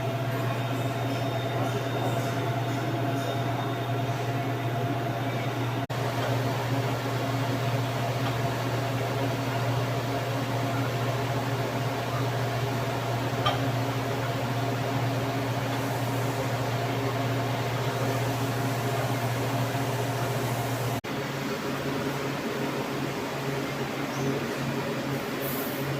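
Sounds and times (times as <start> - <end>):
welding arc buzzing hiss: 5.7 - 21.0.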